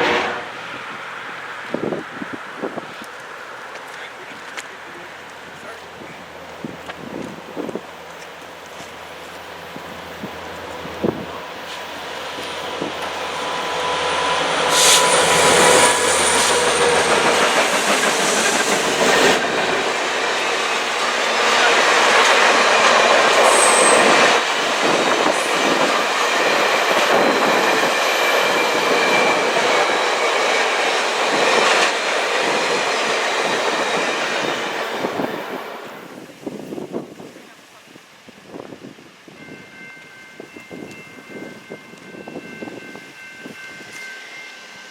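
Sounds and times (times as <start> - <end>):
train wheels rolling on rail: 0.0 - 37.4
high-pitched wheel squeals: 12.5 - 19.4, 23.3 - 24.4.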